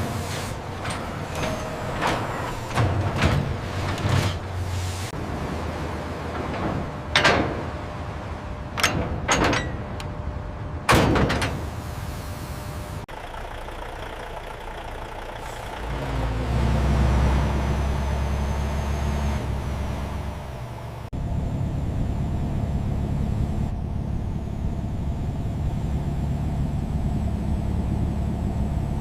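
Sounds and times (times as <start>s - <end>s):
vehicle engine running low: 11.8s - 29.0s.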